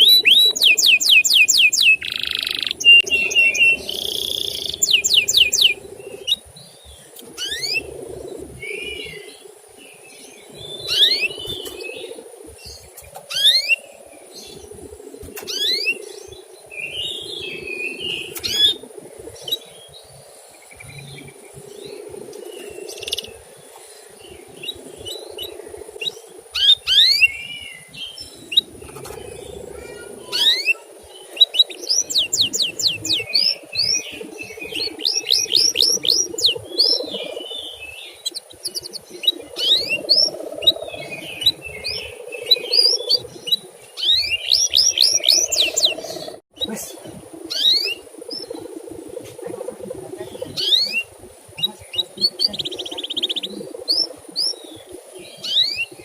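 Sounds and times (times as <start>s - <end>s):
canary chirping: 0.0s - 7.9s, 10.6s - 11.8s, 12.6s - 13.8s, 24.4s - 46.7s.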